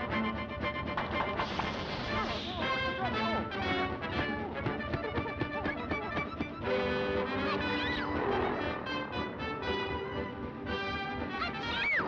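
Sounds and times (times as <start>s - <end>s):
lively cartoon music: 0.0s - 12.0s.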